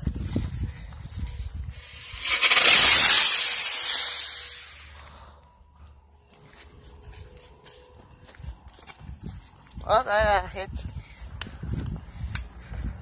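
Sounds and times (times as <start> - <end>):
firework hissing sparks: 1.8 - 5.0.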